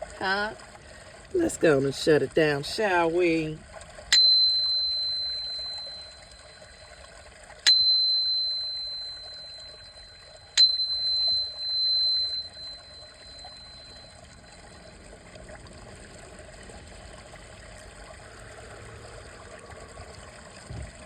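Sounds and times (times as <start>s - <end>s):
small high-pitched bell ringing: 4.1s - 7.1s, 7.7s - 15.0s.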